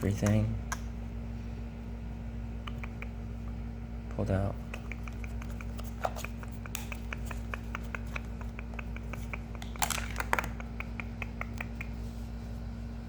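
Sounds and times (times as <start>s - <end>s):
low steady hum: 0.0s - 13.0s
clicks and rustles: 4.6s - 12.0s.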